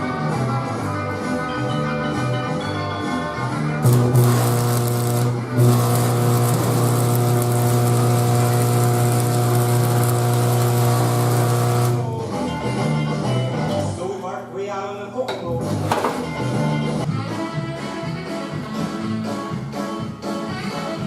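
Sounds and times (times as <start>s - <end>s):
power tool humming: 3.8s - 12.2s.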